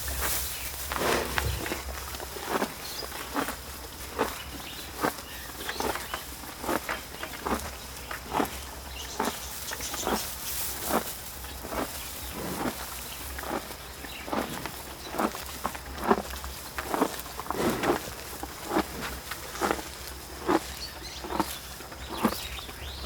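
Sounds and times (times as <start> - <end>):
slow footsteps: 0.0 - 8.6.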